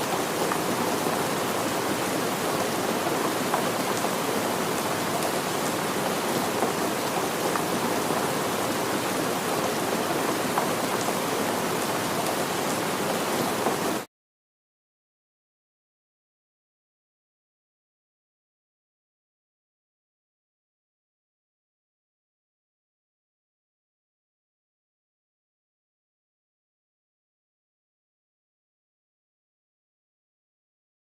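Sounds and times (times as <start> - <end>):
heavy rain pattering: 0.0 - 14.1.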